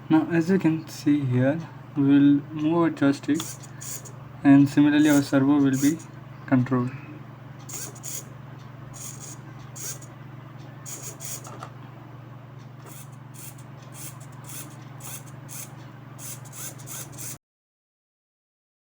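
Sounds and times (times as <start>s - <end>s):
steady low hum: 0.0s - 17.4s
servo motor whirring: 3.4s - 4.1s, 5.0s - 6.1s, 7.7s - 8.3s, 9.0s - 10.1s, 10.9s - 11.7s, 12.8s - 17.4s.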